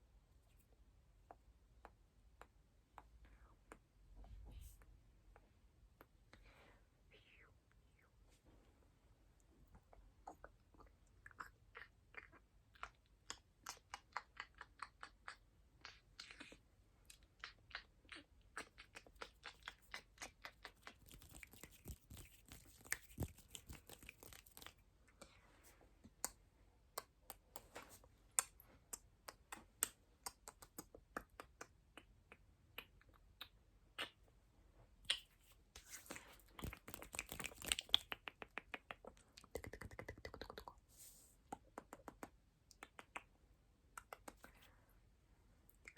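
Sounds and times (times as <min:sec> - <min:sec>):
wet mouth clicks and smacks: 0:09.7 - 0:24.8, 0:28.4 - 0:34.3, 0:35.0 - 0:40.8, 0:41.5 - 0:44.7
soft hissing or rustling: 0:40.8 - 0:41.4.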